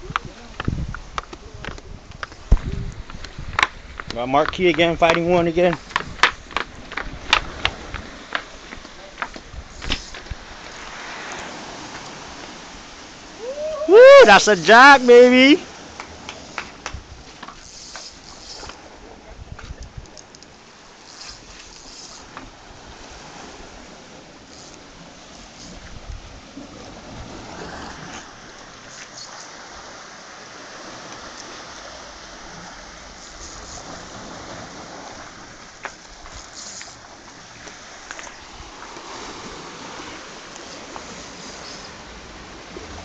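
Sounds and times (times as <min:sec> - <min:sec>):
ocean surf: 0:00.0 - 0:43.0
wind: 0:00.0 - 0:43.0
faint clicks: 0:19.6 - 0:20.5.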